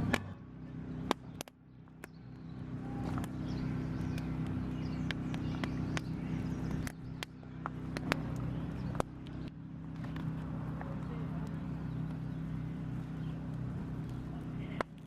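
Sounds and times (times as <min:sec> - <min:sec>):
motor humming: 0:00.0 - 0:15.0
sharp clicks and knocks: 0:01.0 - 0:02.2.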